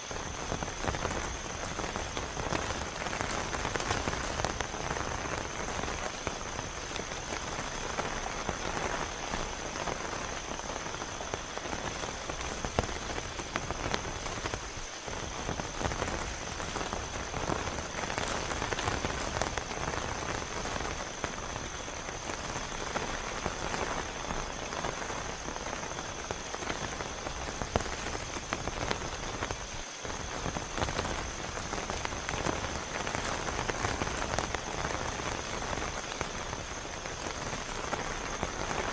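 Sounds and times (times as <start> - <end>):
heavy rain falling: 0.0 - 38.9
raindrops pattering on surfaces: 0.0 - 38.9.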